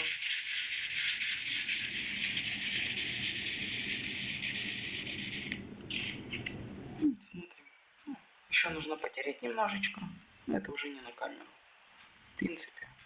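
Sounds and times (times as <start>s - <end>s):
saw blade rubbing on sandpaper: 0.0s - 6.2s.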